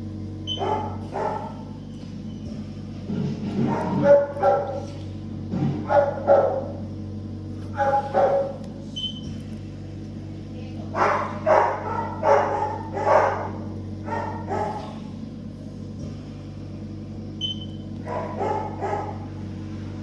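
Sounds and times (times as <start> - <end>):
low electrical hum: 0.0 - 20.0
dog barking: 0.5 - 1.8, 3.6 - 5.0, 5.8 - 6.8, 7.7 - 8.7, 10.9 - 15.1, 18.0 - 19.3.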